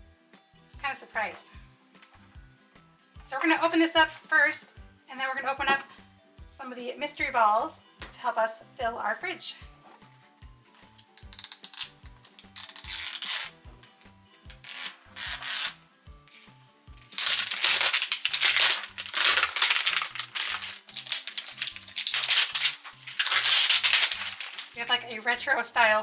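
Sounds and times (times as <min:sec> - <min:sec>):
background music with steady beat: 0:00.0 - 0:26.0
packaging rustling and crinkling: 0:14.6 - 0:24.8.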